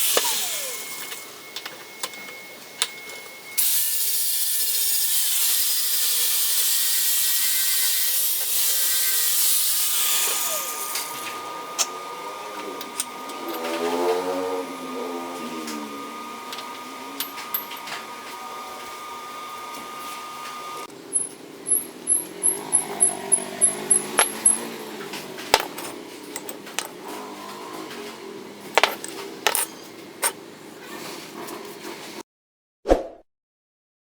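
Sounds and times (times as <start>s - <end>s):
steel bar knocks: 24.0s - 24.6s, 25.6s - 26.9s, 28.8s - 29.8s.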